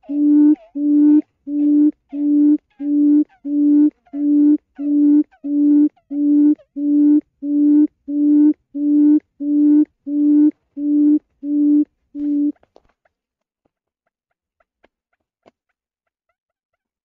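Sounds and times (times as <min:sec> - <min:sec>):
quail hooting: 0:00.0 - 0:12.5.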